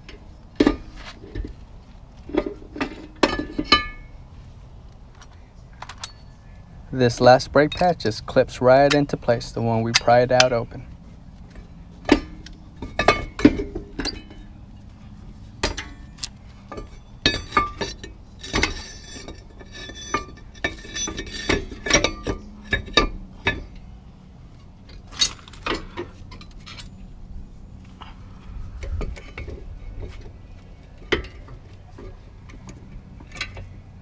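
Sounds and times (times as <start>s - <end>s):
metallic clicks of brake parts: 4.9s - 6.4s, 7.1s - 14.5s, 15.6s - 23.9s, 24.5s - 27.0s, 28.8s - 33.8s.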